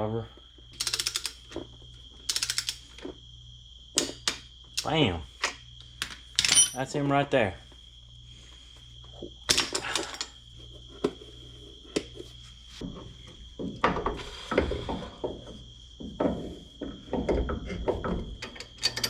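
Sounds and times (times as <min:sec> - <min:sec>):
faint steady hum: 0:00.0 - 0:19.0
metal parts clanking and knocking: 0:06.0 - 0:06.9, 0:17.1 - 0:19.0.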